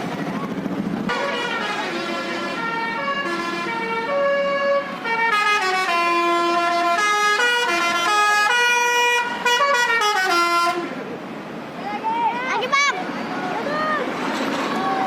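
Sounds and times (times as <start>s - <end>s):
musical air horn tune: 1.1s - 10.9s.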